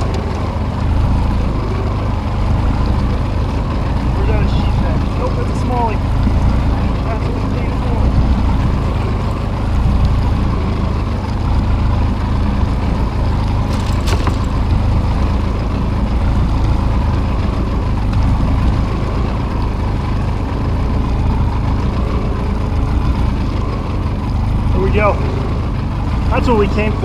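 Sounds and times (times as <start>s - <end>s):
sharp clatter: 12.5s - 18.8s.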